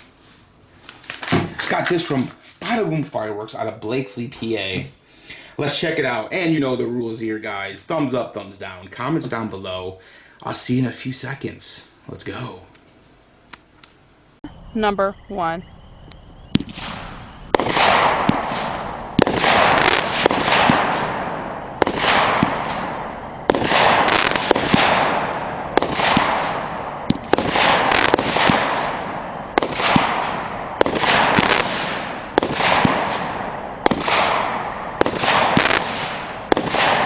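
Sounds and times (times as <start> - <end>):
firework shots banging and hissing: 1.0 - 2.9, 16.5 - 37.0.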